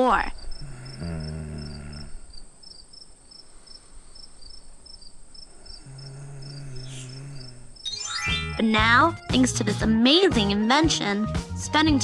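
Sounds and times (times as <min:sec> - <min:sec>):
crickets chirping: 0:00.0 - 0:08.2.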